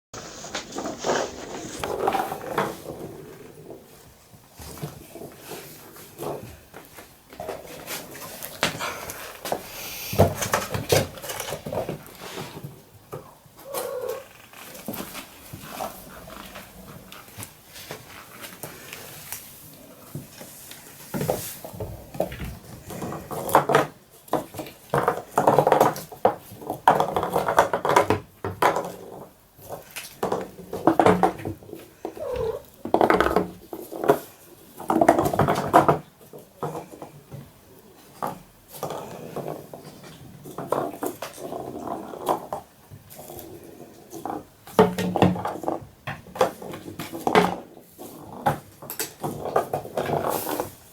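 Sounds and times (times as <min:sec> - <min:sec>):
kittens meowing: 0:13.6 - 0:14.3, 0:32.1 - 0:32.8.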